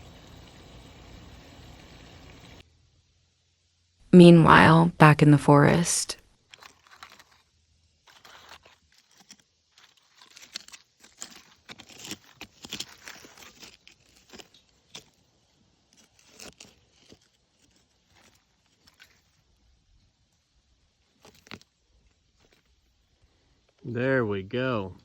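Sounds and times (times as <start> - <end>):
digging in rocky dirt: 6.4 - 23.8.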